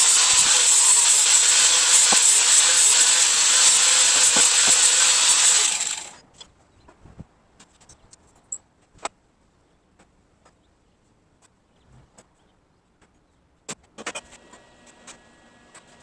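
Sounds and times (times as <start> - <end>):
power tool grinding with whine: 0.0 - 6.2.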